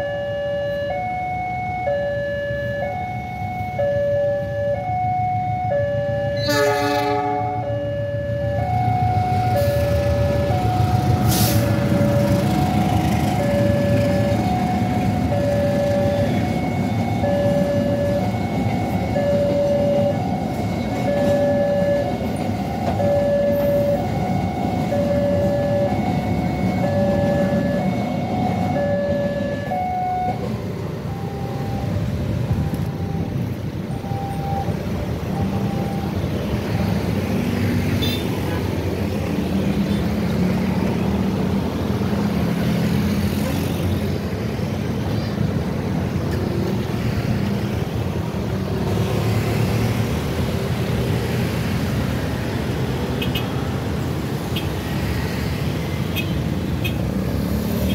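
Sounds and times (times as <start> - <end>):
railroad crossing two-tone chime: 0.0 - 37.5
freight train rumbling past: 6.4 - 7.7, 8.4 - 43.3.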